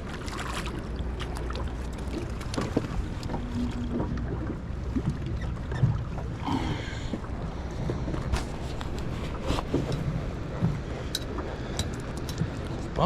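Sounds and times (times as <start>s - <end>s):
moving water: 0.0s - 13.0s
wind rumble: 1.0s - 13.0s
brief low hum: 2.6s - 5.7s.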